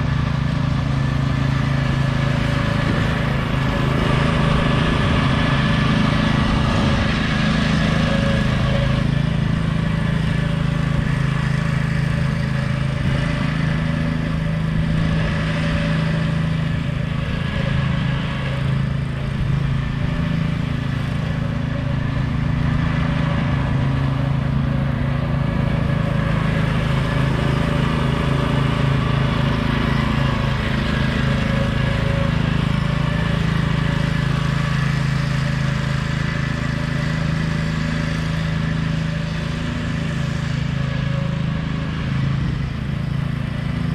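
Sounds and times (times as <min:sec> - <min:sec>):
riding lawn mower engine: 0:00.0 - 0:43.9.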